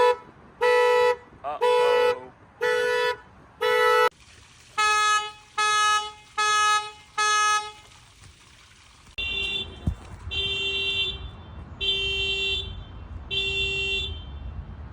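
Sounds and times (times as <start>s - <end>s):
car horn honks: 0.0s - 4.1s, 9.2s - 14.5s
car horn long blasts: 4.8s - 7.8s, 9.2s - 14.4s
sharp thump: 9.7s - 10.3s.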